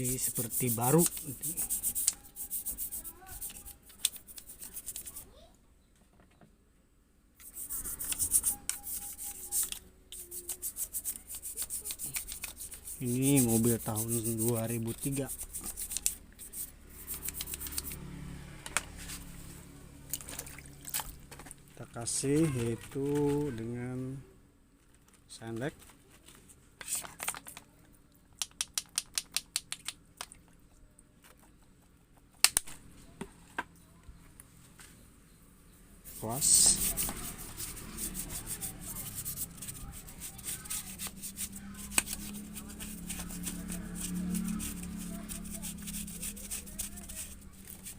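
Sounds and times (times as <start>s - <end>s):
rapid scrubbing strokes: 0.0s - 5.2s, 7.4s - 18.0s, 36.0s - 47.9s
sharp clicks: 28.4s - 30.4s.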